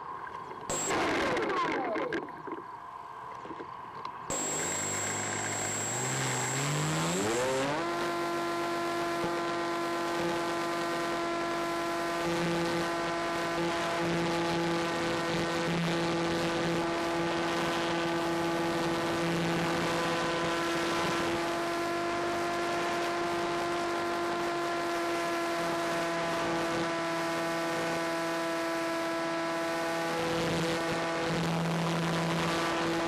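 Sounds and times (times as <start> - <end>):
electric motor and propeller whine: 0.7 - 1.5, 4.3 - 12.9.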